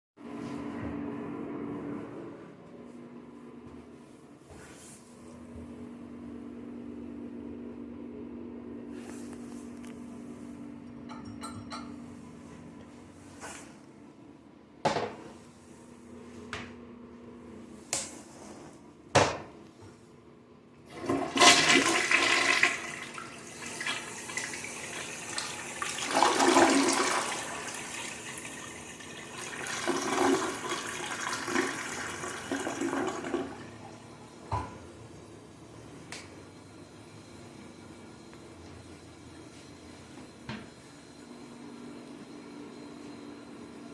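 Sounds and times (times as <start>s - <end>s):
toilet water rushing: 20.9s - 35.4s.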